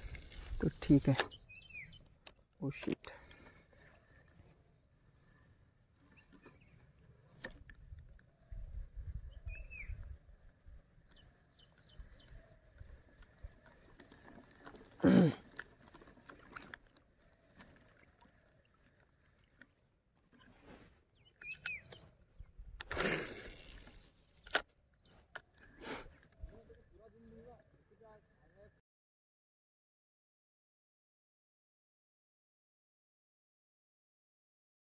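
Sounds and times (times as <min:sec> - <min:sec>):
bird chirps: 0:00.0 - 0:15.0, 0:16.5 - 0:28.8.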